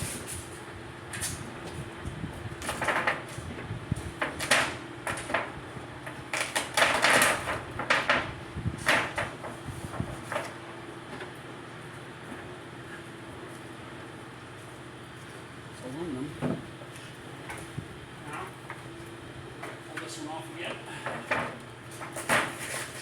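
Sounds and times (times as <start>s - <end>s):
scraping and rubbing noises: 21.9s - 23.0s.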